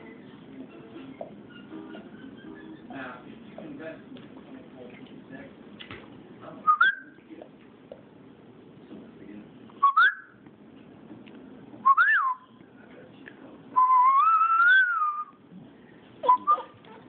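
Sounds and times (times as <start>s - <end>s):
dog whining: 16.2s - 17.0s.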